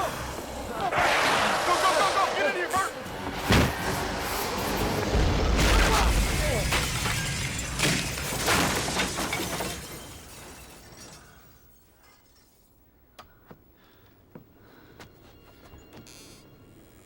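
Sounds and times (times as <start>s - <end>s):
debris crashing down: 0.9s - 12.6s
glass shattering: 5.4s - 12.8s
tinkling falling glass pieces: 5.8s - 12.8s.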